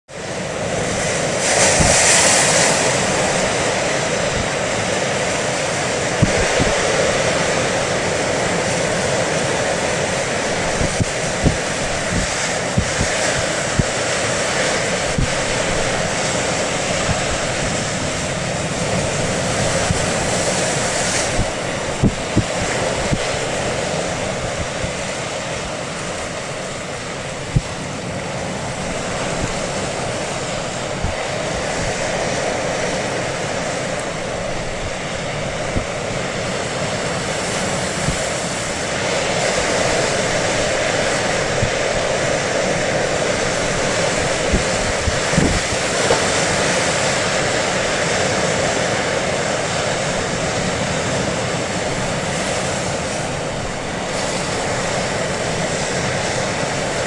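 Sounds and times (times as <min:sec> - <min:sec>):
sea and wind noise: 0:00.0 - 0:57.0
boat engine running: 0:00.1 - 0:57.0
wind thumps on microphone: 0:00.6 - 0:05.4, 0:06.0 - 0:07.8, 0:08.4 - 0:48.2.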